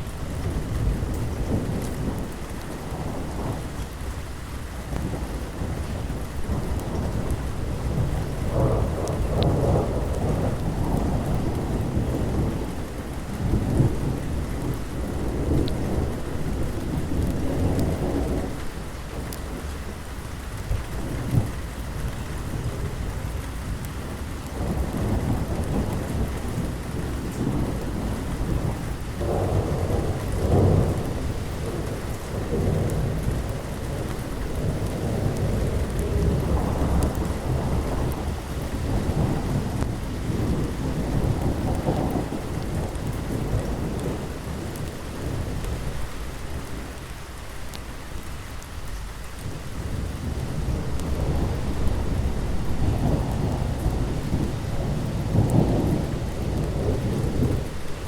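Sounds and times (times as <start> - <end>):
rolling thunder: 0.0 - 4.2, 4.9 - 19.8, 20.6 - 47.2, 49.4 - 58.0
heavy rain: 0.0 - 58.0.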